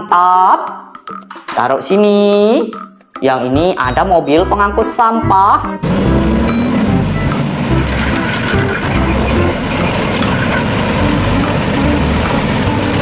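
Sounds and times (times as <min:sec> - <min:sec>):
truck engine rumbling: 0:05.8 - 0:13.0.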